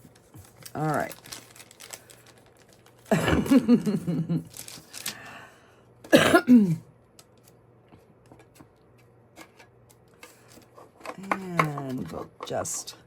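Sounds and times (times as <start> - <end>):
person coughing: 3.1 - 3.9, 6.1 - 6.9.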